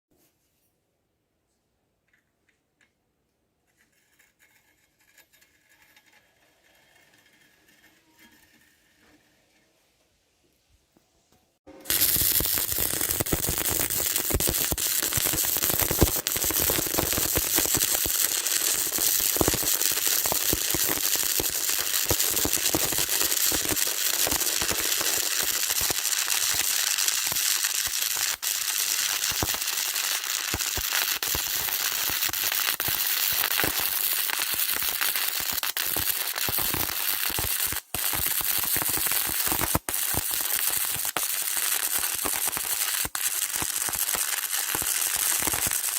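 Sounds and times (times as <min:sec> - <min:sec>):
arc welding crackle: 0:11.8 - 0:45.9.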